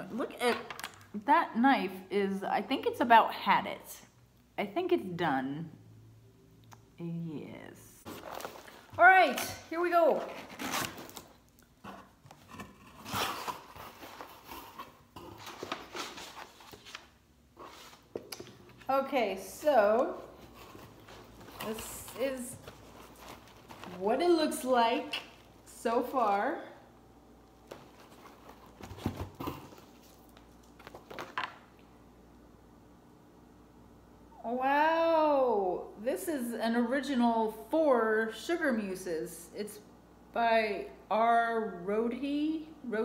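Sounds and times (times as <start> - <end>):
cardboard scraping and rustling: 10.1 - 11.3, 11.9 - 18.9, 20.0 - 24.2, 27.7 - 31.5.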